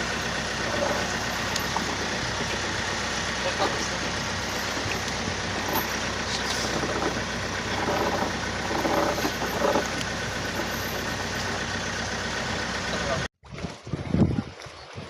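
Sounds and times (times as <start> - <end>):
boat engine drone: 0.0 - 13.3
faint voices: 3.3 - 4.9.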